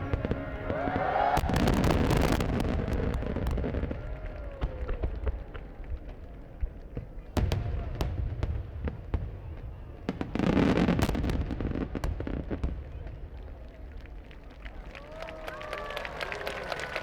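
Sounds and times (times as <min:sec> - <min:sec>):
fireworks bursting: 0:00.0 - 0:13.0.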